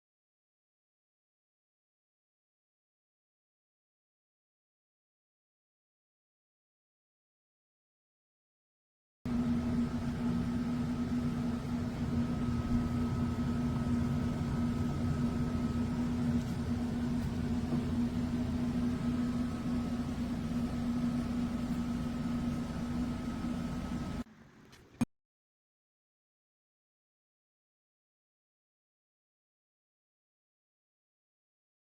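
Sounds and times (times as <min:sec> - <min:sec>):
fan whirring: 0:09.3 - 0:25.0
low electrical hum: 0:09.3 - 0:25.1.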